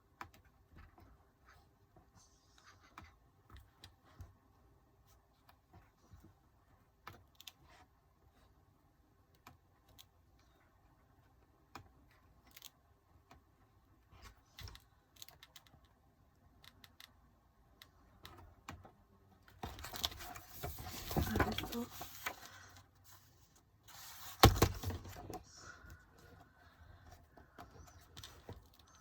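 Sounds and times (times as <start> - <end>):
book pages rustling: 19.6 - 26.4.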